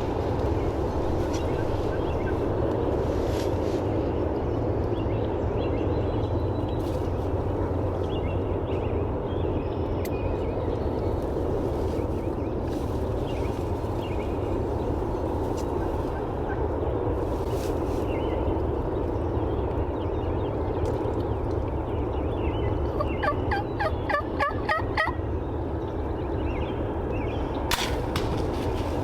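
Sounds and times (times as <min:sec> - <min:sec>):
steady low rumble: 0:00.0 - 0:29.0
wild turkeys calling: 0:23.0 - 0:25.2.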